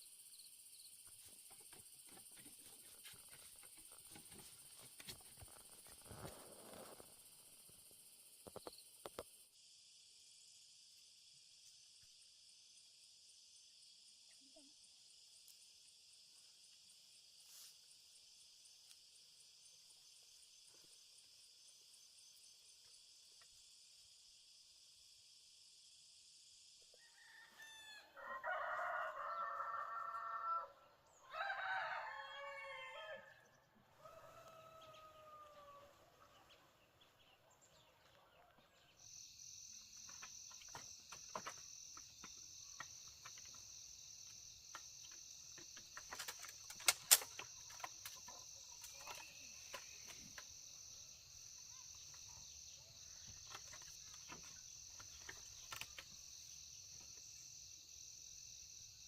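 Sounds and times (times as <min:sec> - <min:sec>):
crickets chirping: 0:00.0 - 0:59.0
rooster crowing: 0:27.0 - 0:36.0.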